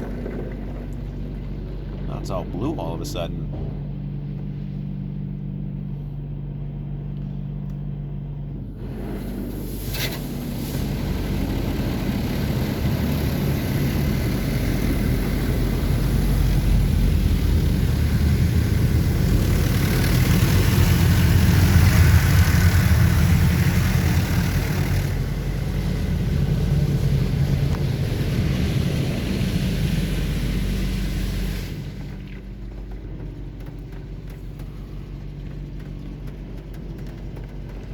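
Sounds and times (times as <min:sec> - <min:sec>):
car wash machinery rumble: 0:00.0 - 0:37.9
water spray hissing on car: 0:08.9 - 0:32.4.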